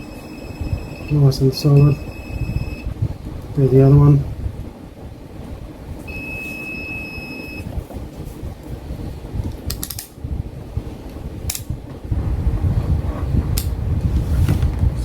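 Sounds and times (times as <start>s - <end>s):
multimeter continuity beep: 0.0s - 2.9s, 6.1s - 7.7s
low rumble: 0.0s - 9.6s, 10.2s - 15.0s.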